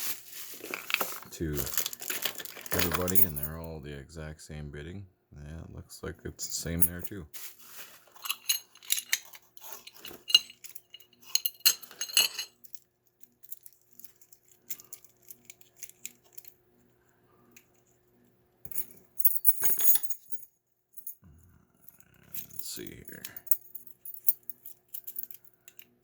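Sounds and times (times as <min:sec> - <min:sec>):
keys clinking and jingling: 0:00.4 - 0:03.6, 0:08.1 - 0:16.6, 0:18.7 - 0:21.2, 0:21.9 - 0:26.0.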